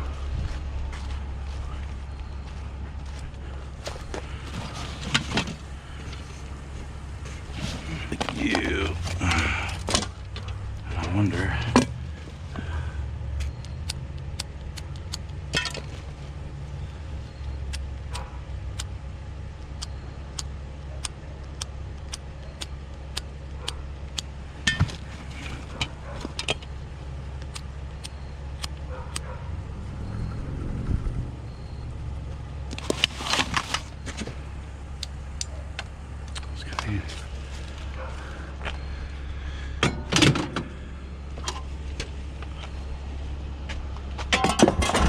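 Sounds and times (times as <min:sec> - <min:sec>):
steady low rumble: 0:00.0 - 0:45.0.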